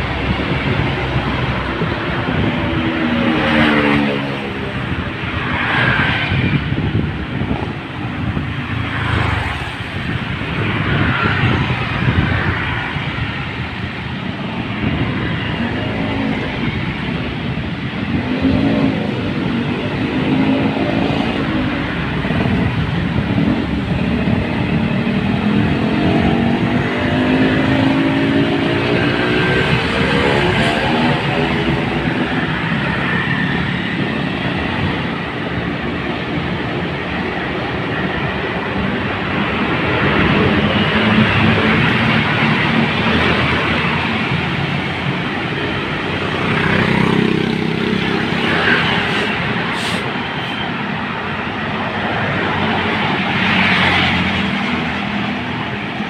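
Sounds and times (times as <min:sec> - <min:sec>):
vehicle engine and road noise: 0:00.0 - 0:56.0
passing engine hum: 0:14.8 - 0:36.8.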